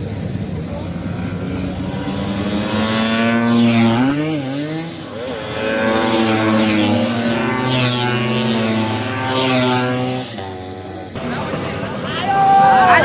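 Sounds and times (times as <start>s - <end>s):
scooter engines at high revs: 0.0s - 13.0s.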